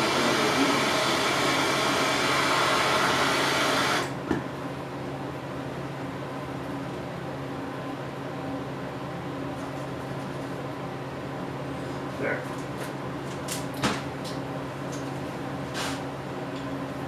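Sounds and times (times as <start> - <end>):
gas torch hissing: 0.0 - 4.1.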